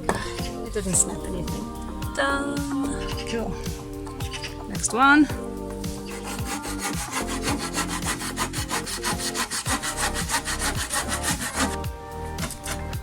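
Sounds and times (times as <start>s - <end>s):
saw cutting through wood: 6.0s - 11.8s.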